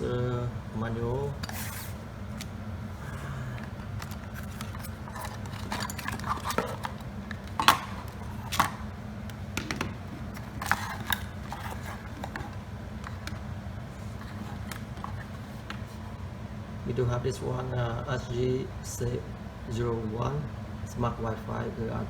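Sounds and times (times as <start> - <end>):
steady low hum: 0.0 - 22.0
packaging rustling: 3.6 - 9.0, 9.6 - 16.1.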